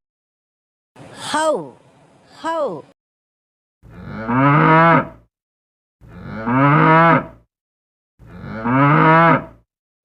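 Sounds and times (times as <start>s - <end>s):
cow mooing: 3.9s - 5.2s, 6.0s - 7.4s, 8.2s - 9.6s.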